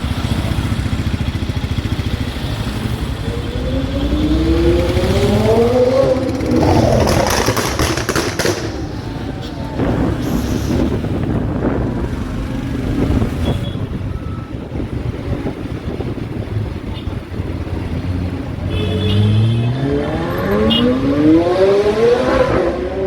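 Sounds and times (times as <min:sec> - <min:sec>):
car engine rumbling and revving: 0:00.0 - 0:23.0
sharp exhaust pops: 0:06.4 - 0:09.2.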